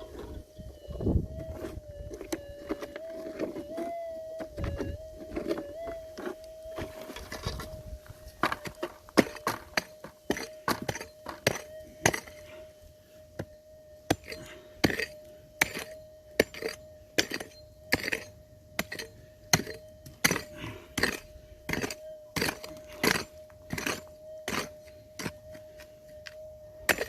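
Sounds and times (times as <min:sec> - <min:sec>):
digging tool striking stony ground: 0:08.4 - 0:12.4, 0:14.1 - 0:25.6.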